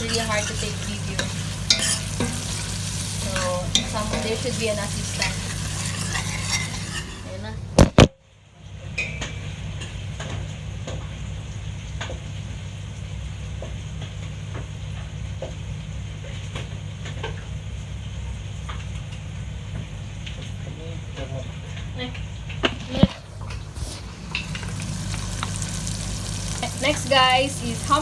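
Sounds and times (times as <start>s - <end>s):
spoon scraping and tapping pot: 0.0s - 8.0s.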